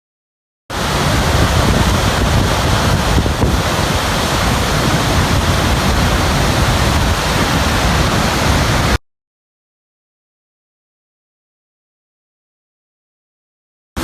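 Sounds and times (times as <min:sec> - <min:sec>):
waterfall rushing: 0:00.7 - 0:09.0.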